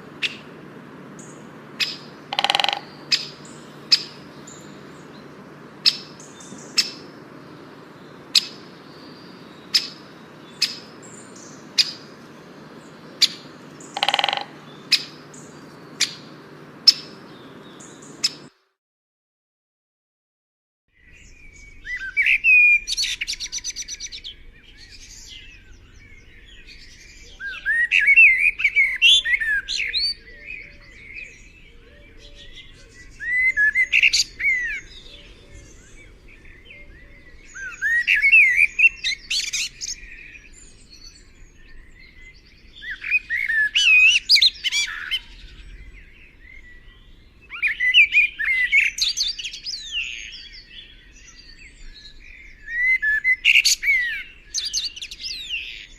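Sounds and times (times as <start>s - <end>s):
songbird singing: 0.0s - 18.7s, 21.0s - 55.9s.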